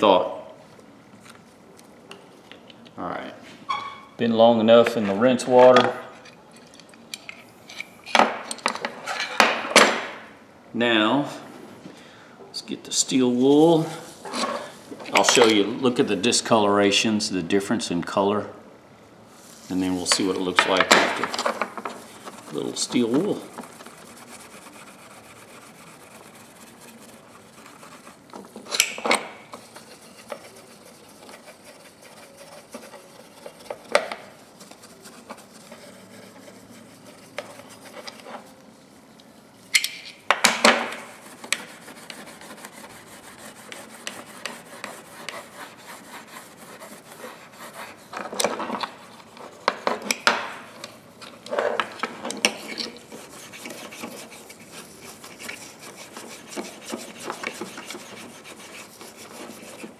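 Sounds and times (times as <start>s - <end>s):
steel wool rubbing on metal: 21.6s - 28.3s, 29.5s - 38.6s, 41.0s - 48.2s, 52.5s - 59.9s.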